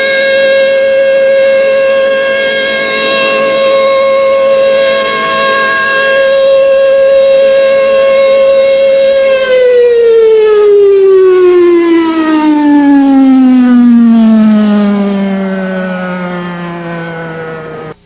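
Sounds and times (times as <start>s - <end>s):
warning siren winding down: 0.0s - 18.0s.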